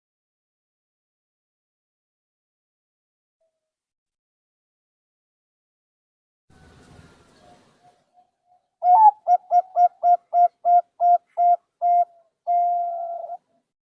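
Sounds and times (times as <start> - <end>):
dove cooing song: 7.4 - 13.7.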